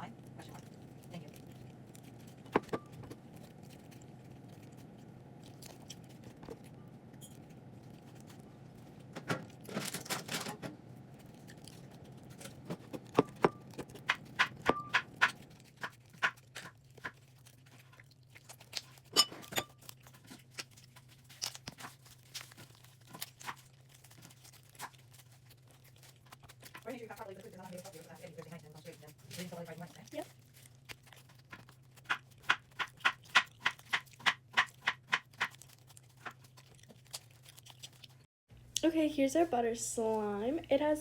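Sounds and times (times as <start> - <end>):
steady low hum: 0.0 - 16.7.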